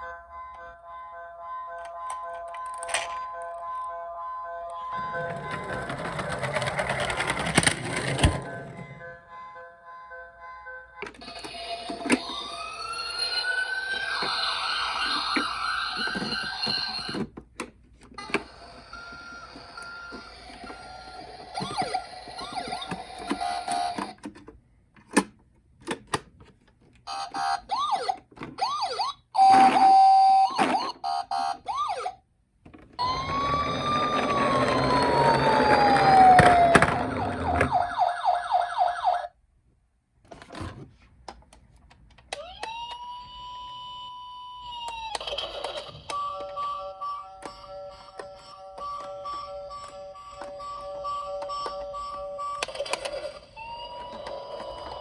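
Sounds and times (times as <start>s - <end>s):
toy vehicle electronic sirens: 0.0s - 17.3s, 18.2s - 24.2s, 27.0s - 32.2s, 33.0s - 39.4s, 42.3s - 55.0s.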